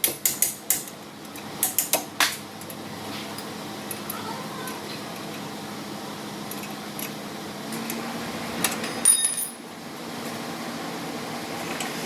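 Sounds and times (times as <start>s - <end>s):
metal tools clinking: 8.8s - 9.6s
loud ringing clink: 8.9s - 9.6s.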